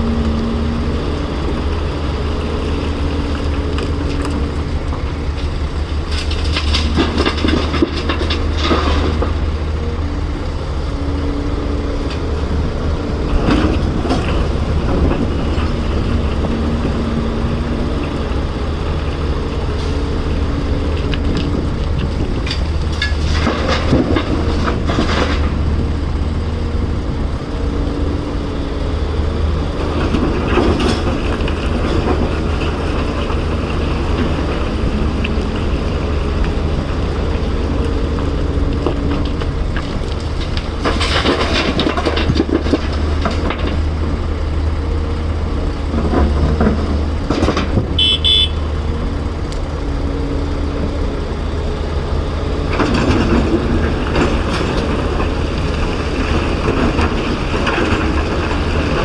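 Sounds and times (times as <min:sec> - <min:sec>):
excavator diesel engine drone: 0:00.0 - 0:59.0
rock and dirt clattering: 0:00.0 - 0:59.0
short high beep: 0:48.0 - 0:48.6.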